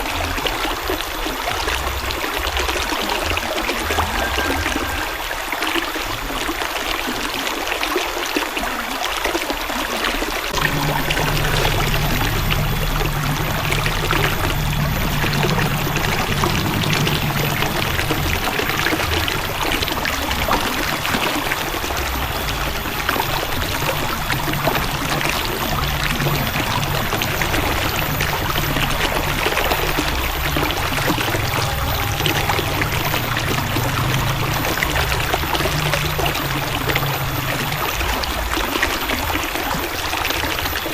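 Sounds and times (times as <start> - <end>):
river water flowing and splashing: 0.0 - 40.9
low rumble: 10.5 - 38.6.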